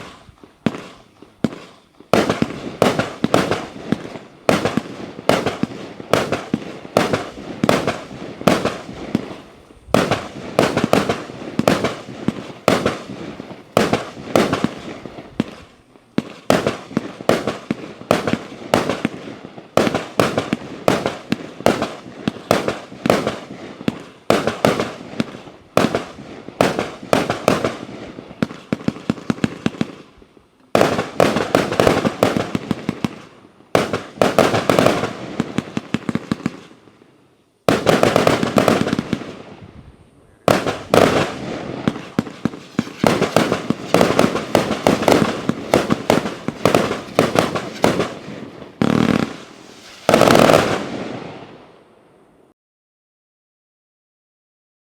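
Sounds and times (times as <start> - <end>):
firework launches and bursts: 0.0 - 30.2, 30.8 - 37.0, 37.6 - 51.9.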